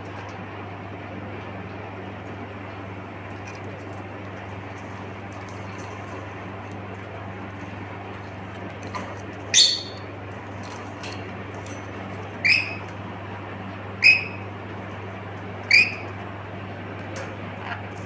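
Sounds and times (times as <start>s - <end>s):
parrot calling: 9.5s - 10.0s, 12.4s - 12.9s, 14.0s - 14.4s, 15.6s - 16.1s.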